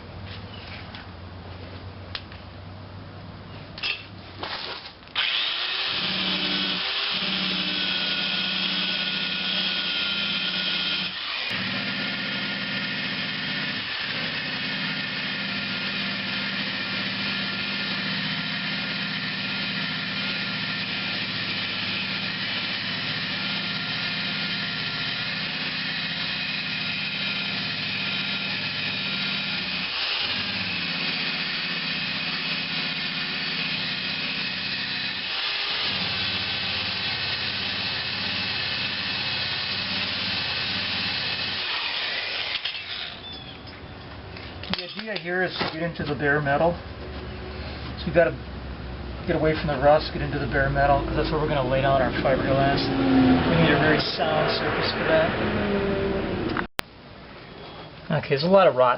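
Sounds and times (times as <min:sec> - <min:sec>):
electric drill grinding paint: 0:05.2 - 0:43.7, 0:49.6 - 0:56.7
drill clicks: 0:05.2 - 0:43.8.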